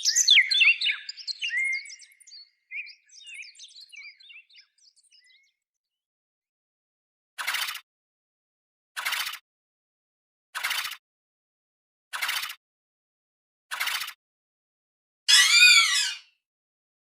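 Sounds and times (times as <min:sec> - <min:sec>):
creature chirping calls: 0:15.3 - 0:16.3.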